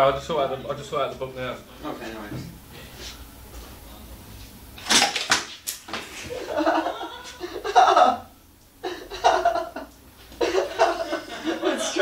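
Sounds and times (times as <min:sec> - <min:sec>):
people laughing: 0:06.2 - 0:12.0.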